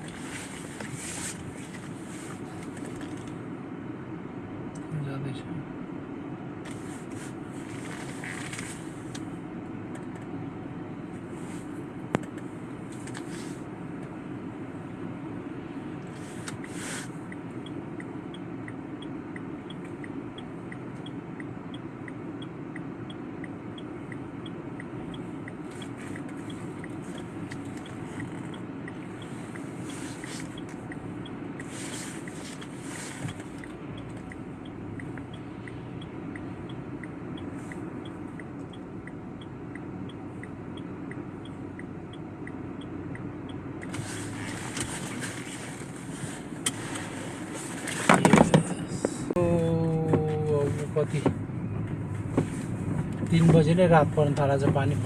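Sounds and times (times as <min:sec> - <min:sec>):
vehicle road noise rumbling: 0:00.0 - 0:55.0
faint regular ticking: 0:16.6 - 0:43.9.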